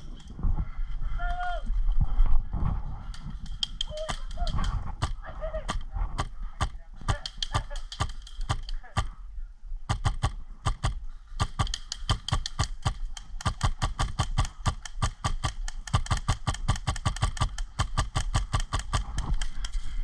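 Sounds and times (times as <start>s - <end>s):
airsoft guns firing: 3.4s - 9.2s, 9.9s - 19.6s.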